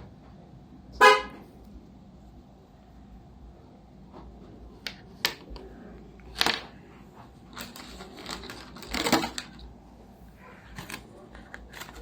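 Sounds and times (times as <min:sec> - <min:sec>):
packaging crinkling: 0:07.5 - 0:09.6
packaging rustling: 0:07.5 - 0:09.6.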